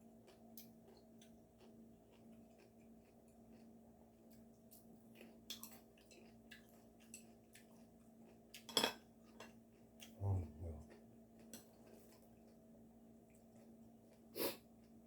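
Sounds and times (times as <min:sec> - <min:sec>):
person chewing: 0:00.3 - 0:03.8, 0:09.3 - 0:12.6
steady low hum: 0:10.0 - 0:11.0.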